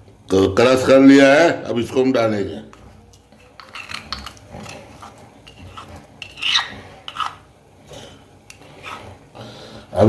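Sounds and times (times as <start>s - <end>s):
utensil clinking and scraping pot: 2.6s - 9.3s.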